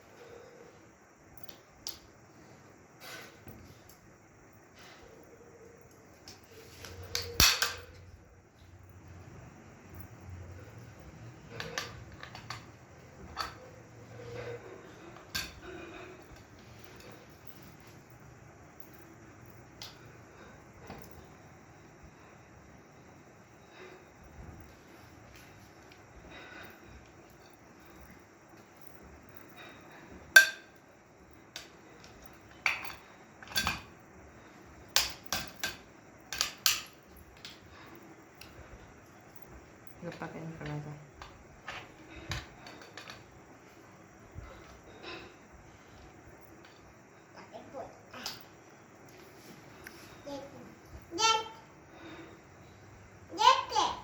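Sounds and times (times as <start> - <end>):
metal parts clinking and knocking: 7.0 - 8.0.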